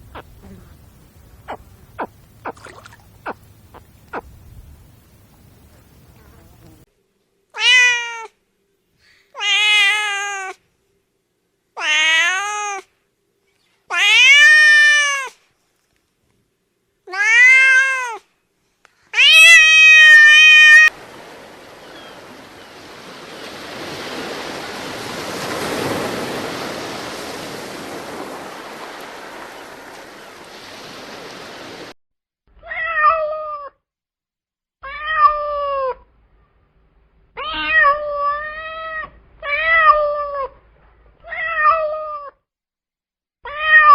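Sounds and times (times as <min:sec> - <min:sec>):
cat meowing: 0:07.6 - 0:08.3, 0:09.4 - 0:10.6, 0:11.8 - 0:12.9, 0:13.9 - 0:15.4, 0:17.1 - 0:18.2, 0:19.2 - 0:20.9, 0:32.6 - 0:33.8, 0:34.8 - 0:36.0, 0:37.4 - 0:40.6, 0:41.2 - 0:42.4, 0:43.5 - 0:43.9.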